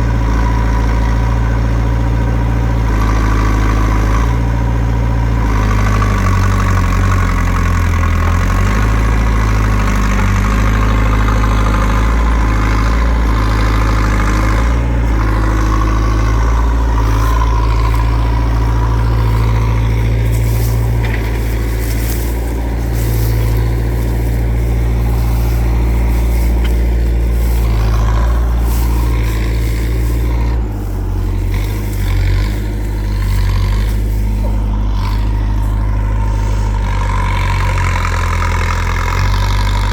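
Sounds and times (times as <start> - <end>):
diesel engine rumbling: 0.0 - 39.9.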